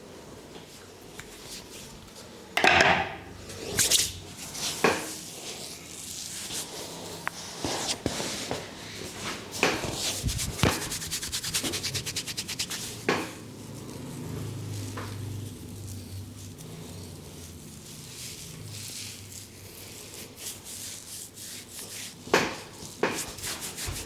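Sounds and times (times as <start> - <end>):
hands rubbing hair: 3.4 - 14.0, 17.7 - 24.0.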